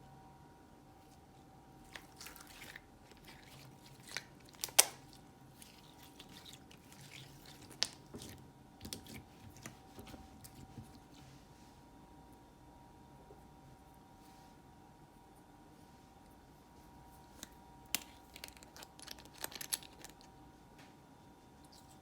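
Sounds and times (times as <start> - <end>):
hands squishing slime: 1.9 - 11.2.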